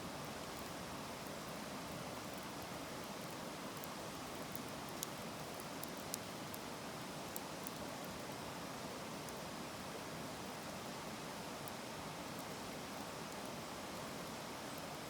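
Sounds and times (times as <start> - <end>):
fire crackles and pops: 3.7 - 6.7.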